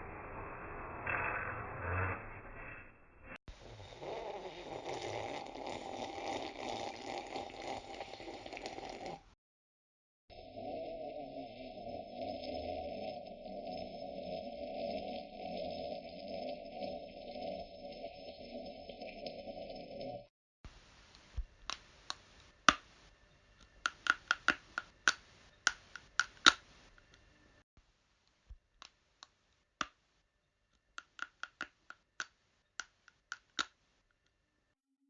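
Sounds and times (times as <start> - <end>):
faint hiss: 20.7 - 27.6
sharp irregular clicks: 23.6 - 27.2, 30.8 - 33.8.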